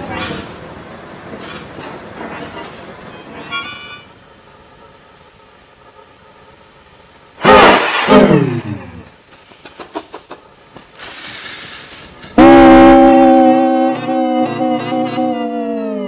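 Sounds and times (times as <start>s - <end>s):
short hiss: 10.8s - 12.4s.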